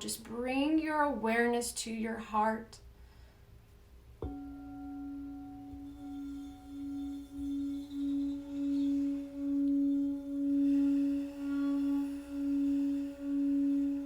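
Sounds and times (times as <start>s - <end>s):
singing bowl ringing: 4.2s - 14.0s.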